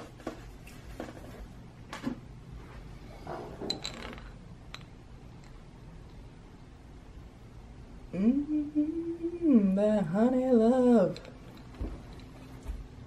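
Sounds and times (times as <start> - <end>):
tableware clinking: 3.6 - 4.9.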